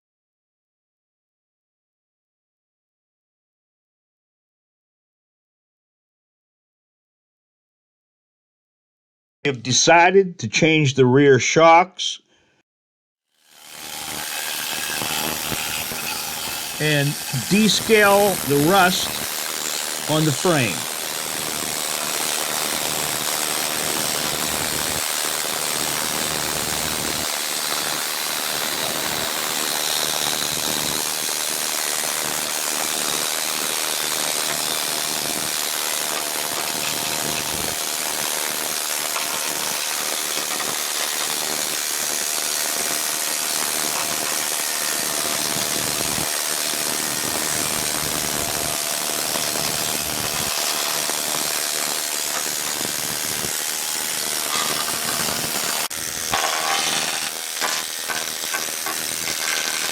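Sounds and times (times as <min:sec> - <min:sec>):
power tool grinding rust: 0:13.4 - 0:59.9.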